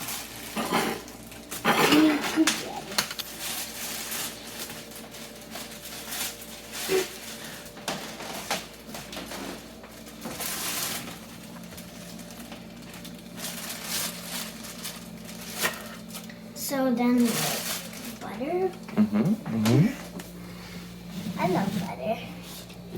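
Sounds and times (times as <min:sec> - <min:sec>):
kitchen rustling: 0:00.0 - 0:18.9, 0:19.6 - 0:22.9.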